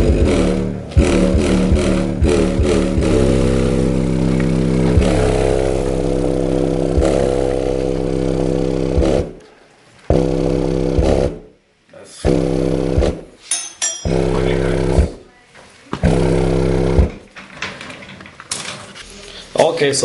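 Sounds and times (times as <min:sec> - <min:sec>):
subwoofer low bass tone buzzing: 0:00.0 - 0:09.4, 0:10.1 - 0:11.6, 0:12.2 - 0:13.4, 0:14.1 - 0:15.2, 0:16.0 - 0:17.3.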